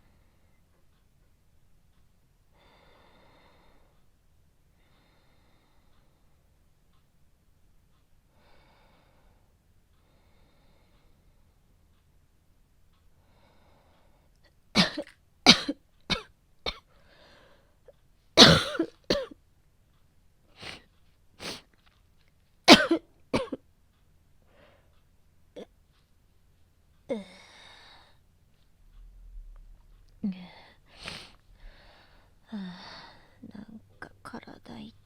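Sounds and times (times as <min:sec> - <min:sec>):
woman coughing: 0:14.8 - 0:16.8, 0:18.4 - 0:19.4, 0:22.7 - 0:23.6.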